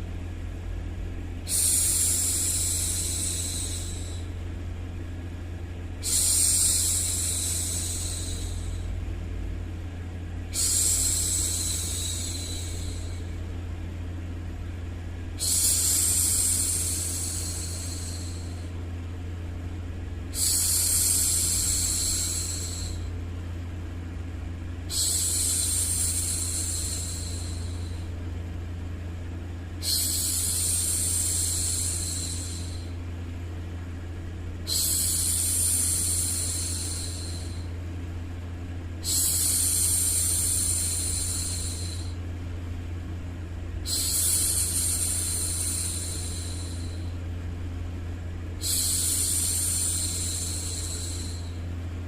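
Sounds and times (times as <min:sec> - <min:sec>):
low white noise hum: 0:00.0 - 0:52.0
woman shushing: 0:34.7 - 0:37.6.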